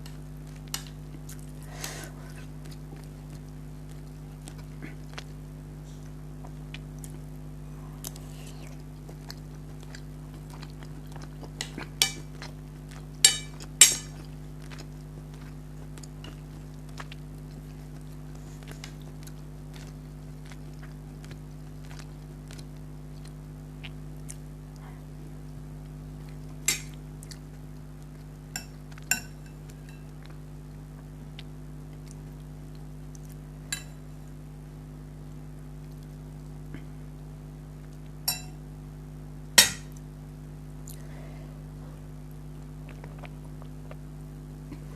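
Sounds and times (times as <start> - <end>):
steady low hum: 0.0 - 44.9
cutlery clinking on a bowl: 11.6 - 12.3, 13.2 - 14.2, 28.6 - 30.1, 38.3 - 38.6.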